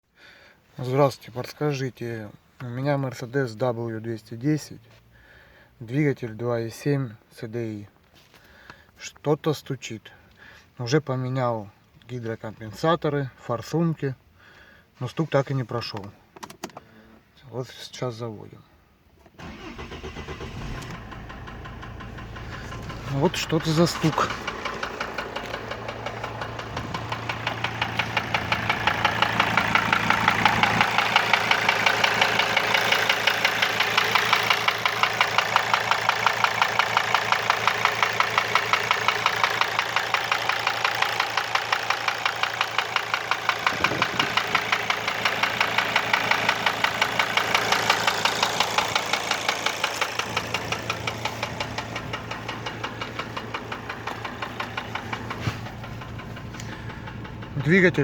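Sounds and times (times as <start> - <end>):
diesel engine idling: 19.4 - 58.0
engine knocking: 19.4 - 58.0.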